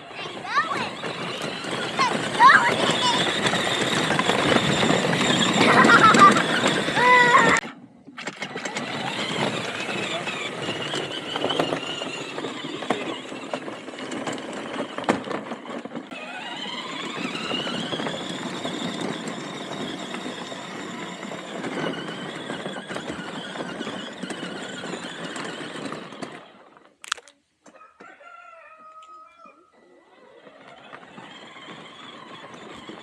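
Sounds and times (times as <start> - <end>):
electric motors whining: 0.0 - 26.8, 30.1 - 33.0.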